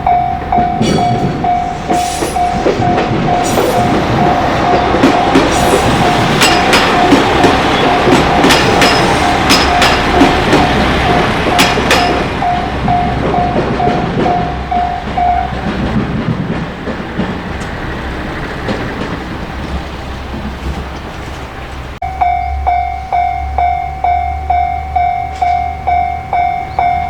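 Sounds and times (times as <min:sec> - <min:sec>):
level-crossing bell ringing: 0:00.0 - 0:15.9, 0:22.0 - 0:27.0
train wheels clicking: 0:00.0 - 0:22.0
train rumble: 0:00.0 - 0:27.0.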